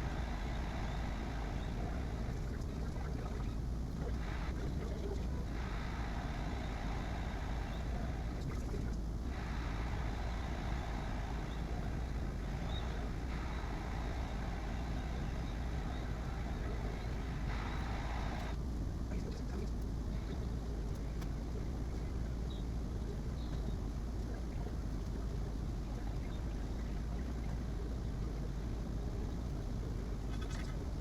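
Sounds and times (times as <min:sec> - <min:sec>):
low fan hum: 0:00.0 - 0:31.0
motor whirr: 0:05.5 - 0:18.6.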